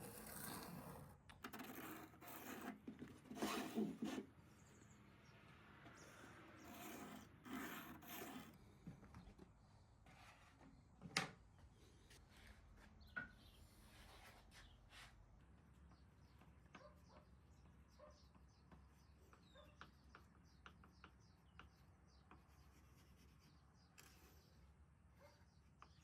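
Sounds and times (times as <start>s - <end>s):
rubbing and scraping on wood: 0.0s - 5.0s, 5.9s - 9.4s.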